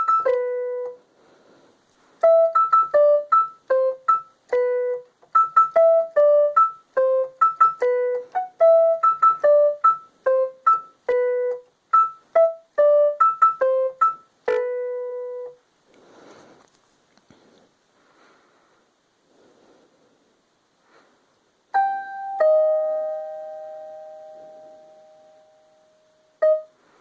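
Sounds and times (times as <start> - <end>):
electronic keyboard melody: 0.0 - 1.0, 2.2 - 15.6, 21.7 - 26.8.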